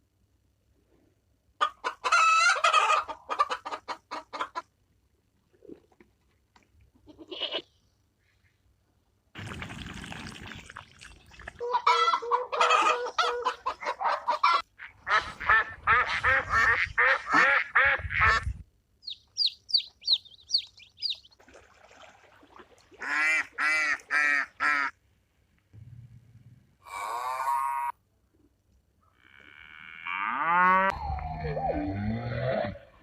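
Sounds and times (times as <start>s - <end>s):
quick high chirps: 19.0s - 21.3s.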